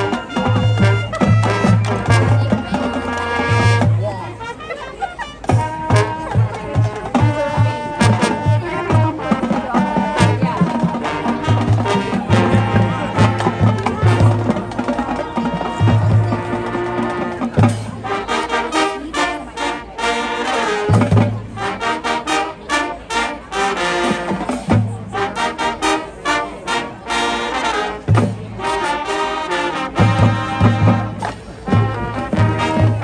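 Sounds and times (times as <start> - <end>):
marching band playing: 0.0 - 33.0
drum hits: 5.5 - 18.1.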